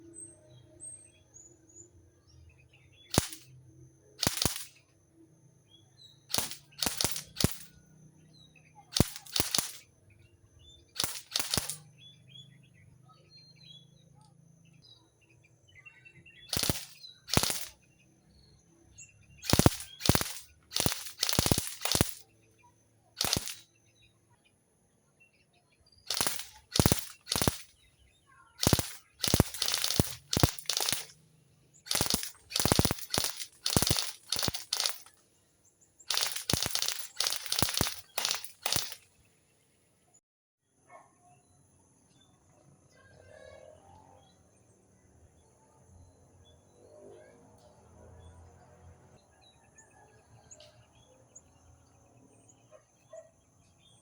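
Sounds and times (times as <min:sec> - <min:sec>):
faint bird chirps: 0:00.0 - 0:40.2
airsoft gun firing: 0:03.1 - 0:03.5, 0:04.2 - 0:04.8, 0:06.3 - 0:07.8, 0:08.9 - 0:09.9, 0:11.0 - 0:11.9, 0:16.5 - 0:17.8, 0:19.4 - 0:22.3, 0:23.2 - 0:23.7, 0:26.1 - 0:27.9, 0:28.6 - 0:31.2, 0:31.9 - 0:35.2, 0:36.1 - 0:39.1.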